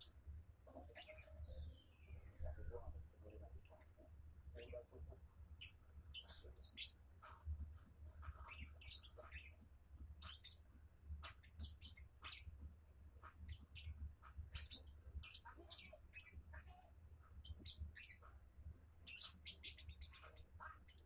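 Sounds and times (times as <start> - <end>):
lovebird squeaky chirps: 8.5 - 9.6, 10.2 - 10.6, 13.4 - 16.4, 17.4 - 18.2, 19.0 - 21.0.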